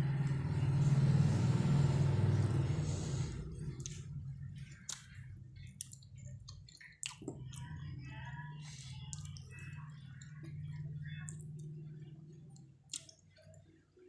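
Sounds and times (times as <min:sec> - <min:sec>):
steady low hum: 0:00.0 - 0:14.0
chewing and mouth smacking: 0:03.5 - 0:13.7.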